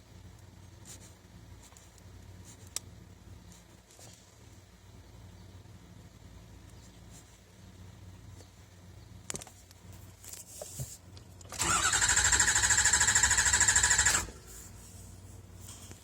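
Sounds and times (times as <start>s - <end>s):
diesel engine cranking on starter: 11.4s - 14.5s.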